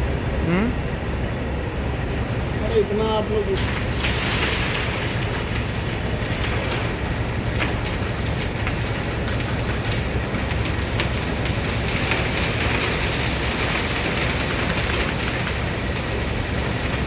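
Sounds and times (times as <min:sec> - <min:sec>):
heavy diesel machinery rumbling: 0:00.0 - 0:17.0.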